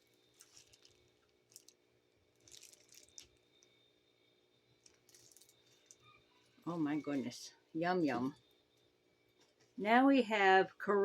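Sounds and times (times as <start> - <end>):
package being handled: 0.2 - 3.8, 4.8 - 6.6.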